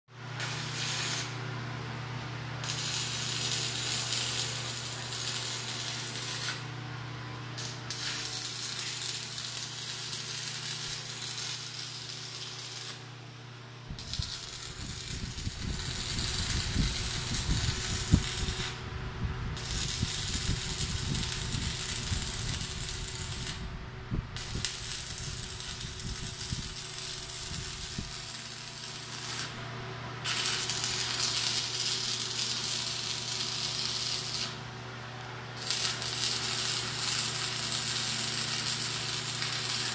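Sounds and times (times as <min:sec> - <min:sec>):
welding machine hum: 0:00.2 - 0:39.9
welding arc crackling and hissing: 0:00.3 - 0:01.4, 0:02.6 - 0:06.7, 0:07.6 - 0:13.1, 0:13.9 - 0:18.8, 0:19.5 - 0:34.6, 0:35.6 - 0:39.9
low rumbling: 0:13.8 - 0:28.8.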